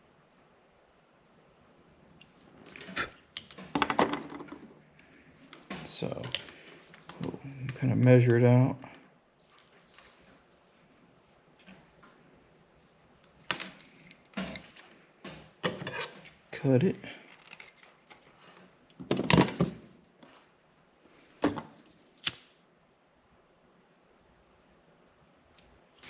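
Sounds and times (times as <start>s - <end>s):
handling rustle: 9.4s - 12.0s.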